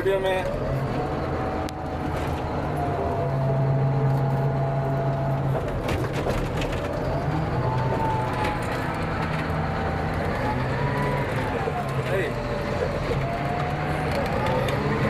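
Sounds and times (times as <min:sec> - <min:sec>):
diesel engine under load: 0:00.0 - 0:15.0.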